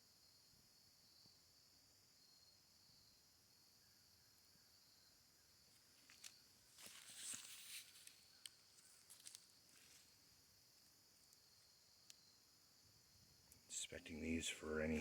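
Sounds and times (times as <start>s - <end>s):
crickets chirping: 0.0s - 15.0s
footsteps in dry leaves: 6.8s - 8.2s.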